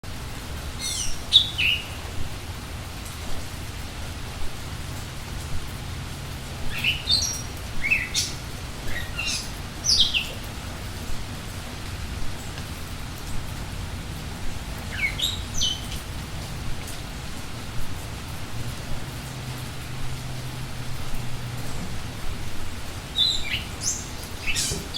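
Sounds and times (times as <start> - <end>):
steady rainfall: 0.0 - 24.9
birds chirping: 0.7 - 2.2, 6.6 - 11.0, 14.5 - 16.5, 22.9 - 24.9.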